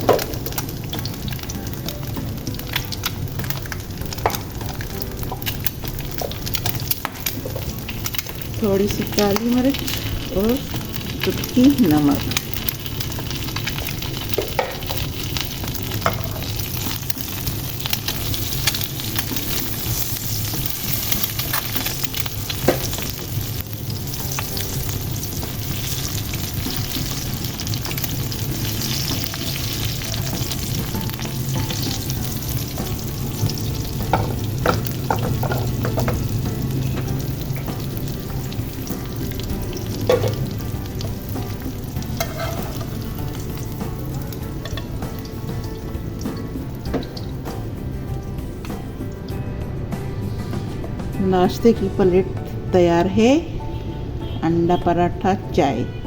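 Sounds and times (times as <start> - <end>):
omelette sizzling in pan: 0.0 - 49.2.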